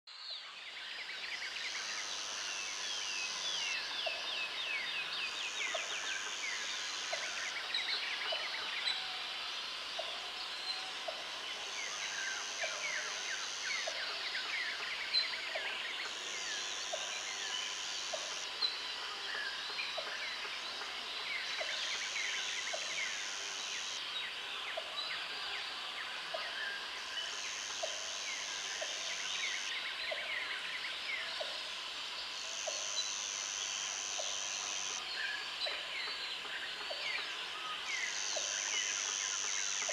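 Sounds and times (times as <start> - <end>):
high insect buzz: 31.9 - 35.2.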